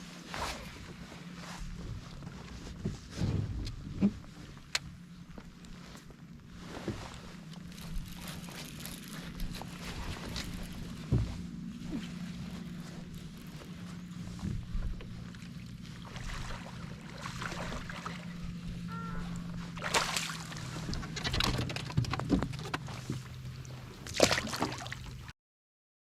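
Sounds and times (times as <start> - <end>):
steady low hum: 0.0 - 25.3
gear handling: 6.7 - 15.2
splashy rustles: 15.3 - 18.6, 19.5 - 25.3.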